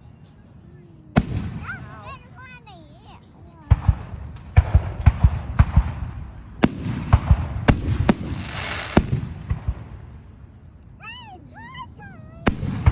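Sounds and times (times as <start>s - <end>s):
fireworks bangs and booms: 1.1s - 2.6s, 3.6s - 10.4s, 12.4s - 12.9s
fireworks crackling: 1.1s - 12.9s.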